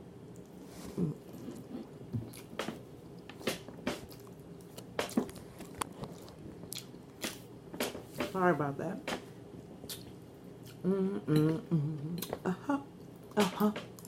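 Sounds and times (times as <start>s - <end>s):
person chewing food: 0.2s - 7.5s, 9.8s - 12.4s.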